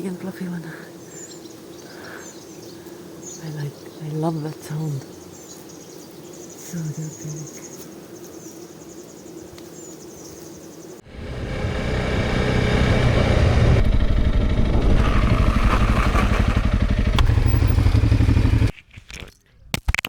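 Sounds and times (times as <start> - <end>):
bees buzzing: 0.9 - 18.5
motorcycle engine running: 11.0 - 18.7
wind noise: 11.5 - 16.8.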